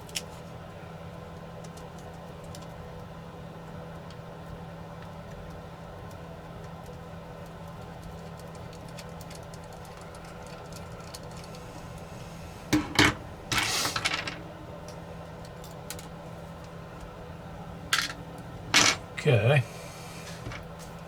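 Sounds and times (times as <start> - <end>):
light ticks of small parts: 1.3 - 3.1, 4.0 - 11.6
tool scraping: 12.2 - 14.4.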